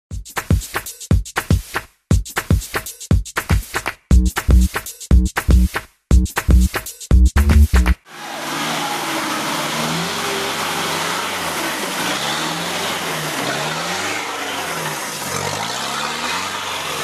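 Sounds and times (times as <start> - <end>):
music: 0.1 - 8.0
off-road vehicle engine revving: 8.1 - 17.0.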